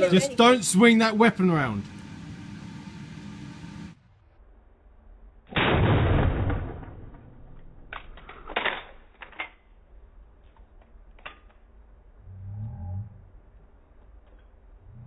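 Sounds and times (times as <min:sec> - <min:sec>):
shotgun shot: 0:05.5 - 0:07.9
small clicks and knocks: 0:10.4 - 0:11.7.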